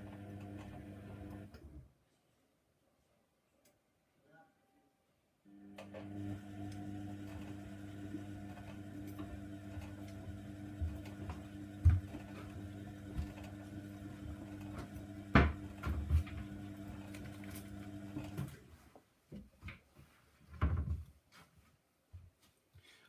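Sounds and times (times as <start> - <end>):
washing machine motor hum: 0.0 - 1.6, 5.5 - 18.6.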